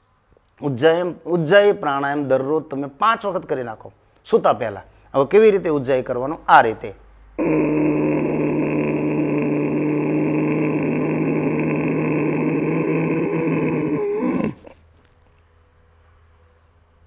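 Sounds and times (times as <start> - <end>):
breath drawn through tightened throat: 7.4 - 14.9.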